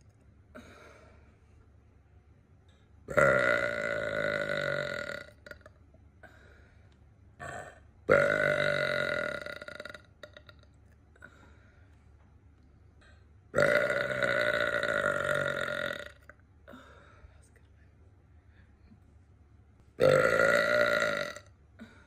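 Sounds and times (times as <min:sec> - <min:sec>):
woman burping: 0:03.1 - 0:06.4, 0:07.4 - 0:10.7, 0:13.6 - 0:16.9, 0:20.0 - 0:22.0.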